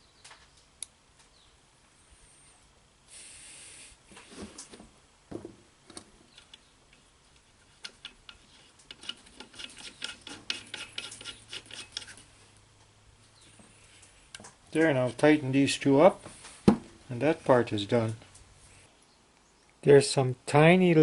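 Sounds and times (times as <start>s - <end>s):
short hiss: 3.1s - 4.7s.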